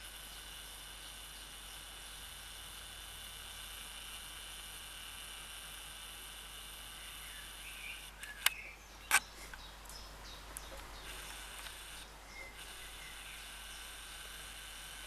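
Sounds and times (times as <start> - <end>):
small bird chirping: 0.0 - 2.6, 6.7 - 15.0
background hum and hiss: 0.0 - 15.0
sharp clicks: 6.7 - 15.0.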